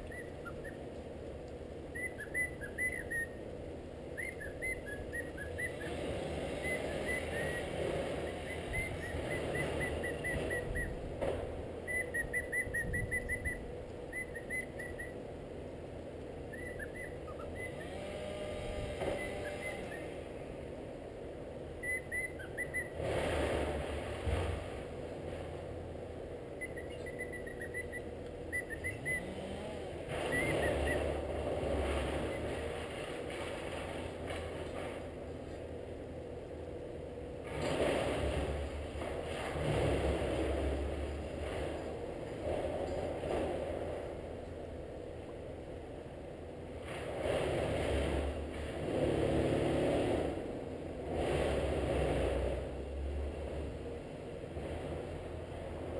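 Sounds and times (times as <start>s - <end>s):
cockatiel chirping: 0.0s - 0.8s, 1.9s - 3.4s, 4.2s - 5.8s, 11.9s - 15.2s, 16.5s - 17.8s, 21.8s - 23.0s, 26.6s - 29.2s.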